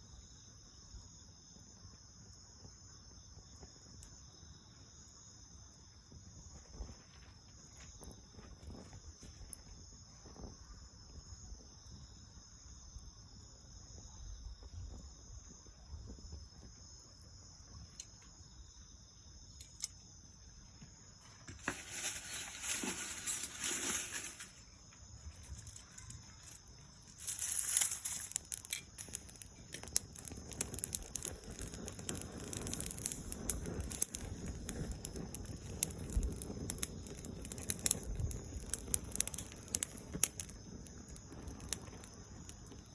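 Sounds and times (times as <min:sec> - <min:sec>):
fire crackling and popping: 0:00.0 - 0:42.9
insect chirring: 0:00.0 - 0:42.9
loud rustle: 0:21.5 - 0:28.5.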